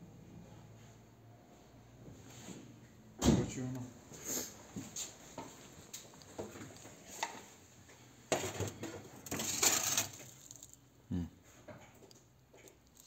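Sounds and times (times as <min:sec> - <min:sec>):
light clinks and knocks: 0:11.6 - 0:13.0.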